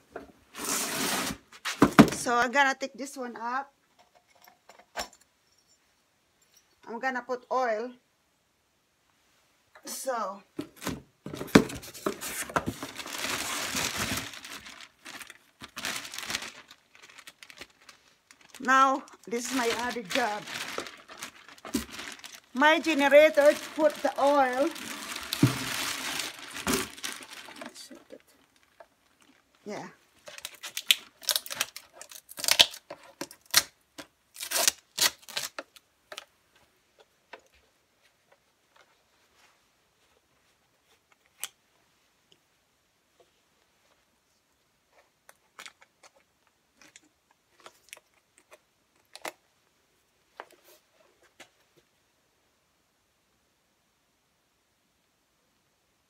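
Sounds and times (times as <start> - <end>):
loud rustling and crinkling: 10.6 - 36.3.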